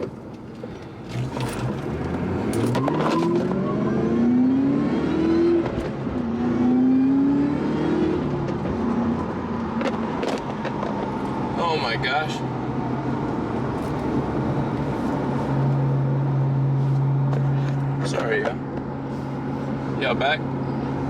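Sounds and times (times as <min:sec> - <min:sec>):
car engine accelerating hard: 0:01.0 - 0:09.9.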